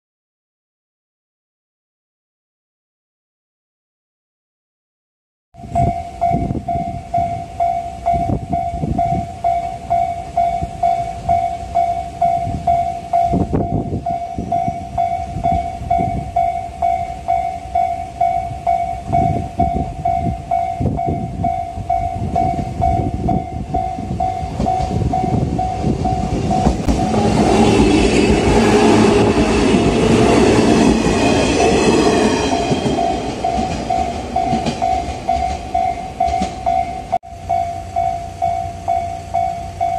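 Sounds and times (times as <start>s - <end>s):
level crossing alarm ringing: 5.6s - 39.9s
electric train running: 14.5s - 39.9s.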